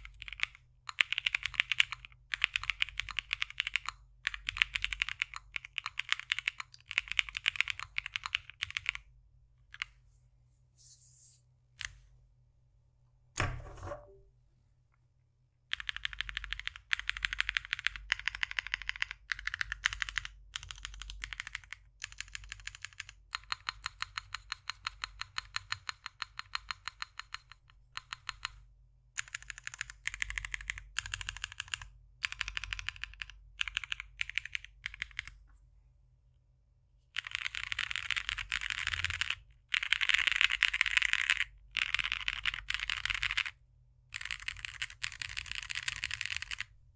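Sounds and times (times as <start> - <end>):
mechanical keyboard typing: 0.0 - 9.1, 15.7 - 28.6, 29.2 - 35.4, 37.2 - 46.8
loud keyboard thud: 13.4 - 14.2.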